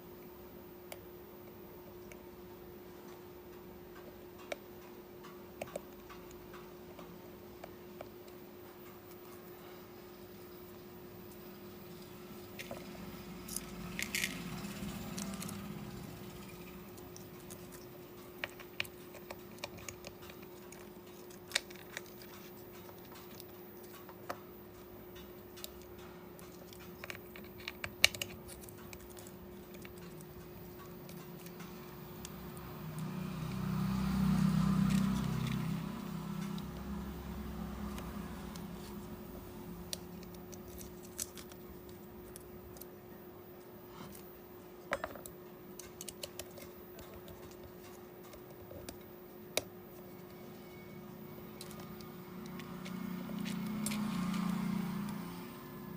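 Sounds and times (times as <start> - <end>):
steady hum: 0.0 - 55.9
small tools clicking and tapping: 16.3 - 33.6, 44.9 - 50.4, 51.5 - 55.2.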